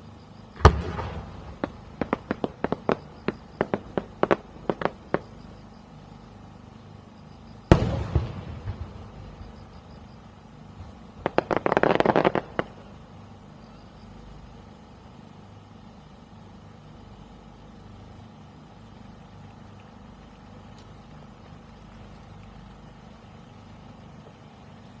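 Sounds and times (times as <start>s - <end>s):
firework crackling pops: 0.6s - 5.4s, 7.7s - 9.5s, 10.8s - 13.0s.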